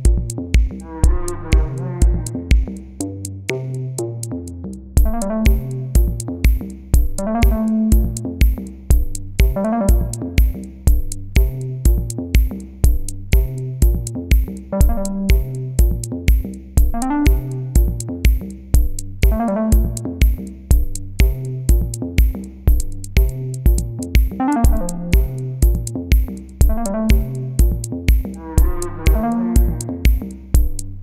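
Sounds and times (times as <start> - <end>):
drum machine beat: 0.0 - 4.3, 5.0 - 31.0
bass line: 0.0 - 31.0
synthesizer melody: 0.8 - 2.5, 5.1 - 6.3, 7.0 - 8.4, 9.4 - 10.6, 14.8 - 15.6, 17.0 - 18.0, 19.2 - 20.3, 24.4 - 25.8, 26.7 - 27.8, 28.4 - 30.3.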